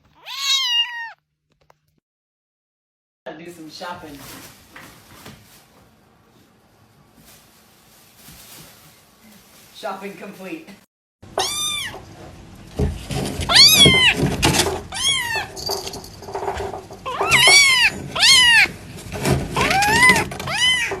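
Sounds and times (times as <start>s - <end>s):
cat meowing loudly: 0.0s - 1.2s, 11.3s - 12.1s, 13.5s - 14.2s, 14.9s - 15.6s, 17.0s - 18.8s, 19.6s - 21.0s.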